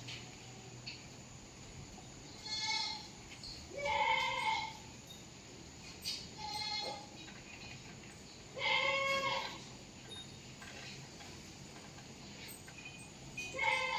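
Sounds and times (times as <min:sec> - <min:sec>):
goat bleating: 0:02.4 - 0:03.1, 0:03.7 - 0:04.8, 0:06.4 - 0:07.1, 0:08.6 - 0:09.6, 0:13.5 - 0:13.9.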